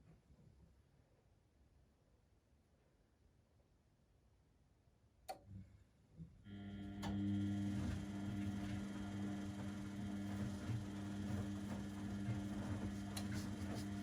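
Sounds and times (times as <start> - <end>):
click: 5.2 - 5.5, 7.0 - 7.2
laundry machine humming: 6.5 - 14.0.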